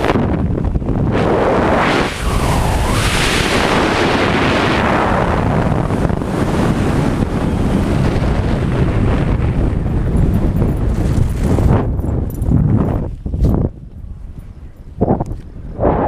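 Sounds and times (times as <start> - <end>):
loud rushing noise with low rumble: 0.0 - 11.9.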